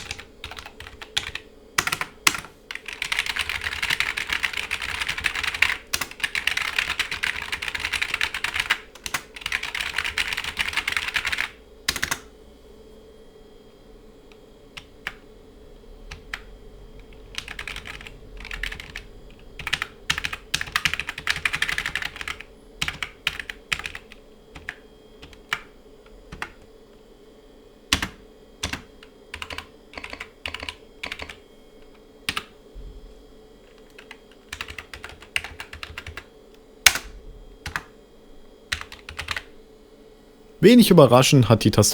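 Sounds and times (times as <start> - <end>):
typing on keyboard: 0.0 - 12.3, 17.3 - 19.0, 19.6 - 25.7, 26.3 - 26.7, 27.9 - 31.4, 32.3 - 32.5, 33.7 - 36.3, 37.6 - 37.9, 38.7 - 39.5.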